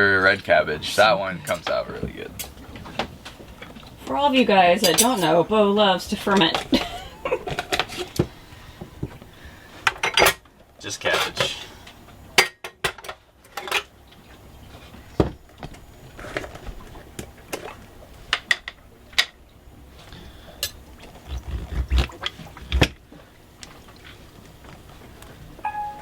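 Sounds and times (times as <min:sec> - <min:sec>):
utensils and dishes clinking: 0:04.8 - 0:05.4
dull thumps: 0:21.1 - 0:23.0.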